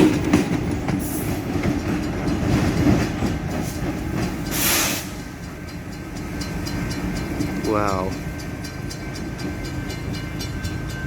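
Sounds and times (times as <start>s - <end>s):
train wheels rumbling and clicking: 0.0s - 11.0s
brief hiss: 4.5s - 5.2s.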